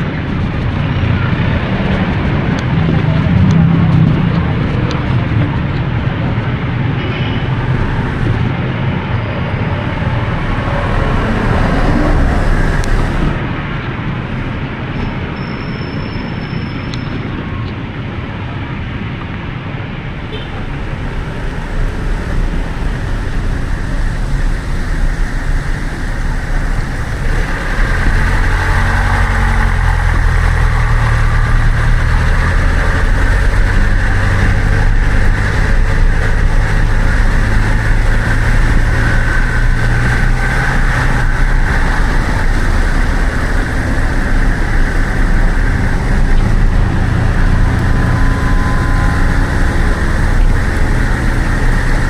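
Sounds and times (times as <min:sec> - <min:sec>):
heavy vehicle engine close by: 0:00.0 - 0:15.4, 0:17.3 - 0:52.0
road traffic: 0:00.0 - 0:52.0.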